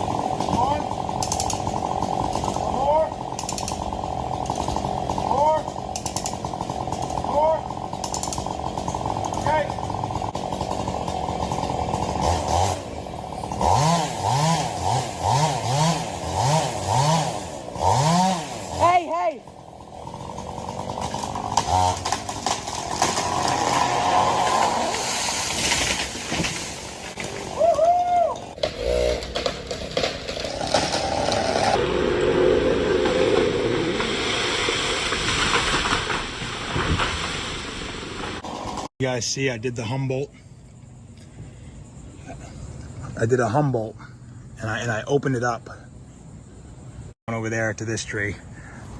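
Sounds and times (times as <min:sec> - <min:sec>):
chainsaw engine revving: 0:00.0 - 0:27.6, 0:28.4 - 0:38.9.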